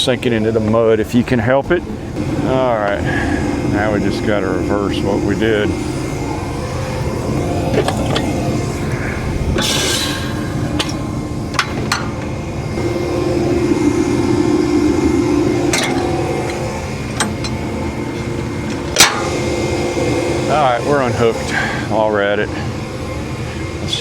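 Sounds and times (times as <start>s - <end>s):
steady low hum: 0.0s - 24.0s.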